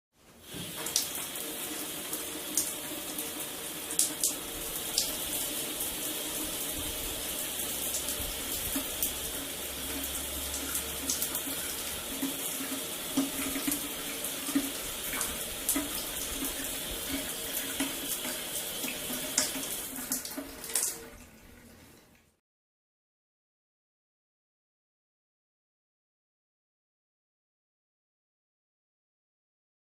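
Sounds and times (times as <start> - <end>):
shower water spraying: 0.3 - 21.2.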